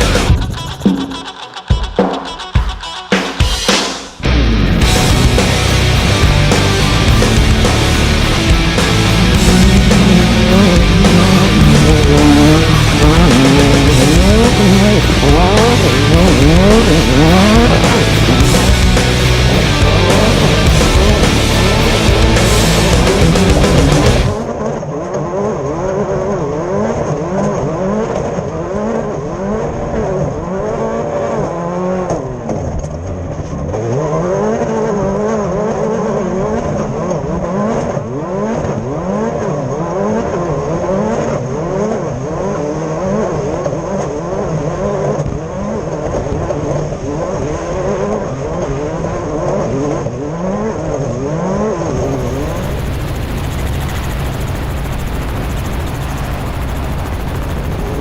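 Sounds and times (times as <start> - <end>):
steady high whine: 4.2 - 24.5, 51.9 - 58.0
race car engine revving: 4.2 - 58.0.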